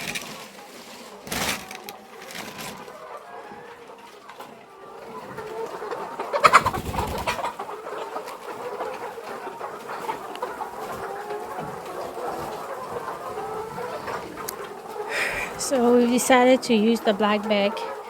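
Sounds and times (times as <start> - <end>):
rustling clatter: 0.0 - 2.9
hens clucking: 0.0 - 18.0.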